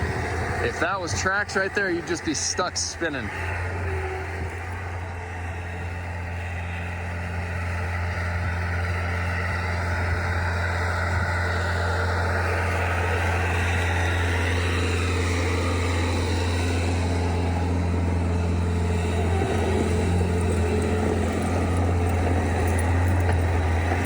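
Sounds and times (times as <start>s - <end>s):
diesel engine running: 0.0s - 24.0s.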